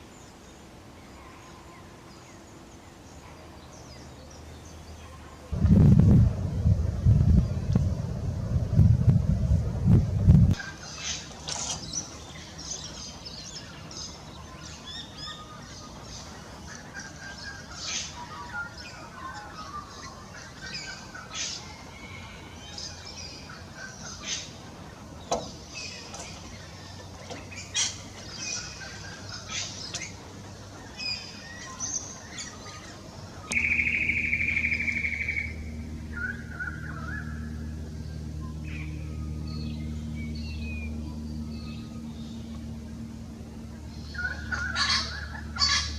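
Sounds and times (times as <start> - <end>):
birds chirping and squawking: 10.6 - 42.5, 43.7 - 45.9.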